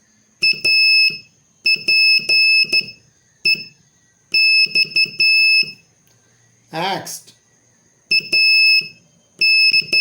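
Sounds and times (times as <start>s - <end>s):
high-pitched morse code tone: 0.4s - 5.8s, 8.1s - 10.0s.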